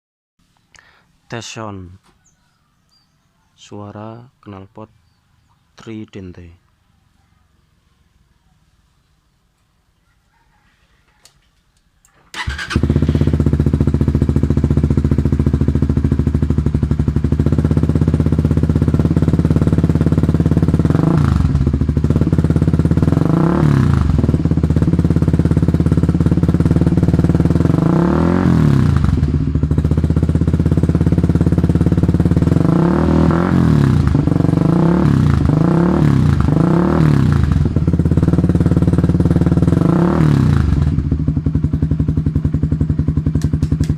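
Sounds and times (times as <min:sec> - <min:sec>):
motorcycle throttle blips: 0:12.3 - 0:43.9
motorcycle engine idling: 0:12.4 - 0:43.9.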